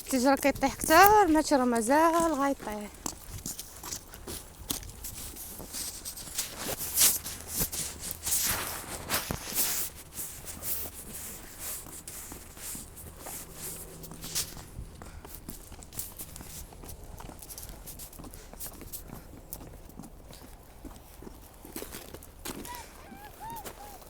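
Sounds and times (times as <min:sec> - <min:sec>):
footsteps crunching through snow: 0:00.0 - 0:24.0.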